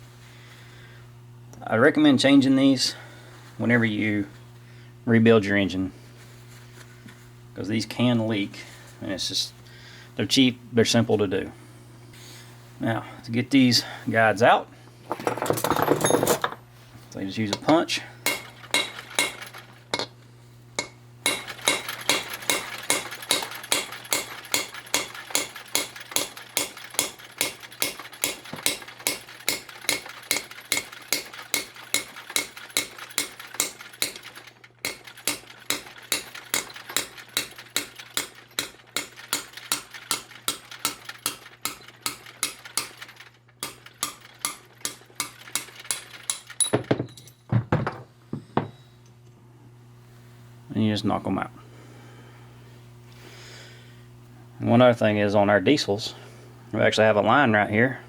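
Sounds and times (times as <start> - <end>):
hammer striking metal punch: 17.5 - 20.1, 20.8 - 34.2, 34.8 - 43.0, 43.6 - 47.3.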